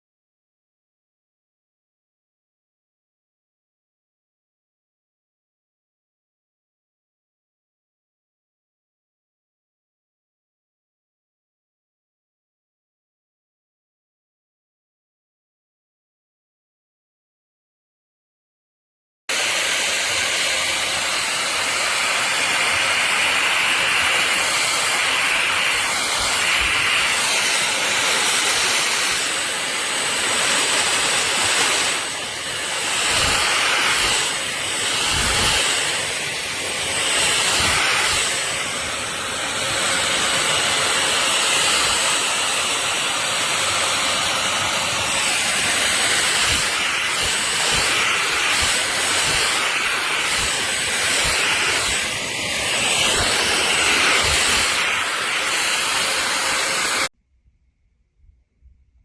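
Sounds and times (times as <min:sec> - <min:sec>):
stick vacuum running: 0:19.3 - 0:57.1.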